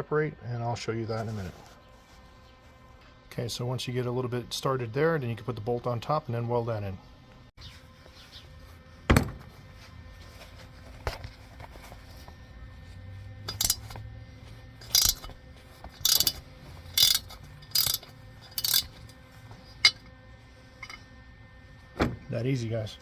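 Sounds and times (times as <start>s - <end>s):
ratchet wrench clicking: 13.5s - 14.0s, 14.8s - 15.3s, 16.0s - 19.2s.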